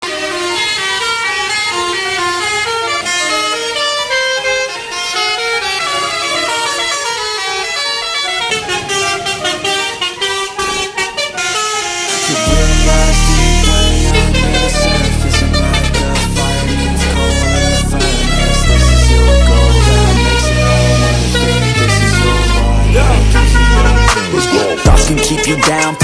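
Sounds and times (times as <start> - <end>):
bus musical horn playing melody: 0.0 - 26.0
loud music with heavy bass: 11.9 - 26.0.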